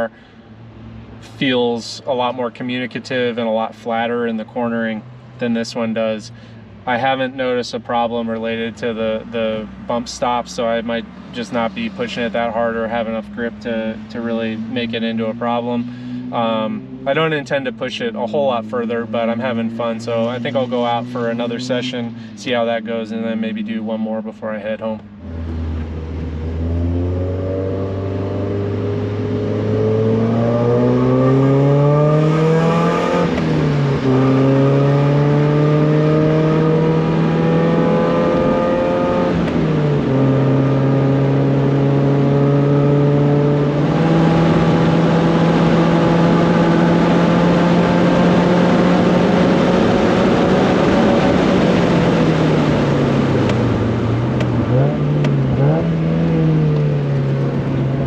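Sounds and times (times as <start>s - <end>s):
car engine accelerating: 0.0s - 58.0s.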